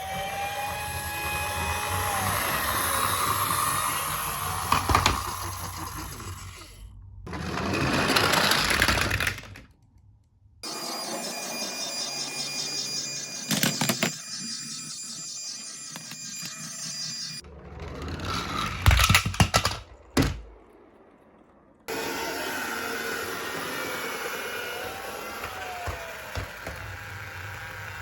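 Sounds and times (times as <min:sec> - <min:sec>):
toy car motor whirring: 0:00.0 - 0:06.8, 0:10.6 - 0:19.7, 0:22.0 - 0:28.0.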